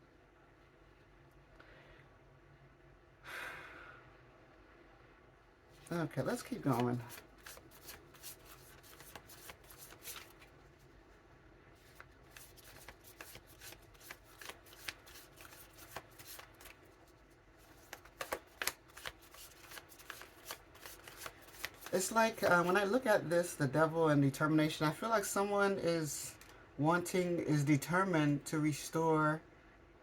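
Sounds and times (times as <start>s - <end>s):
cards being shuffled: 5.8s - 10.6s, 11.8s - 22.8s.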